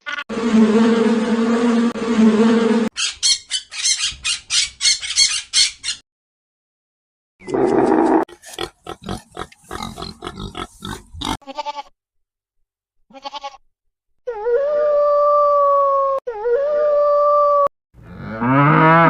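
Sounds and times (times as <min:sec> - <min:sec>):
pig calls: 0:07.4 - 0:11.4
pig squealing and grunting: 0:07.4 - 0:11.4.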